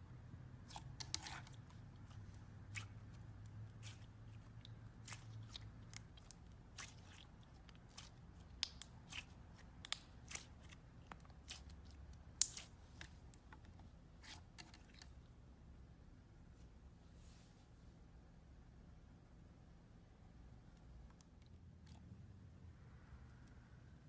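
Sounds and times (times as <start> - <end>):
slime crackling and clicking: 7.9 - 12.8.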